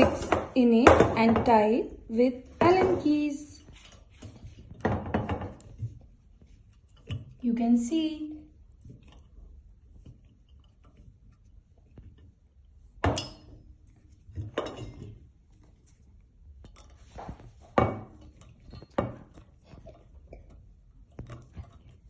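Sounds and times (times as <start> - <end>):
metal hardware clinking and knocking: 2.6 - 5.9, 13.0 - 13.6.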